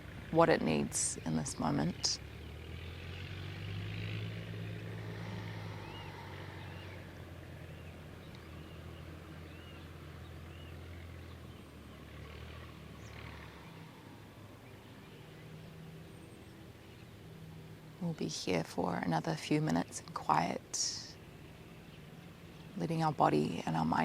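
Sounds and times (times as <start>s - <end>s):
vehicle engine hum: 0.0s - 24.0s
faint bird chirps: 4.6s - 17.2s.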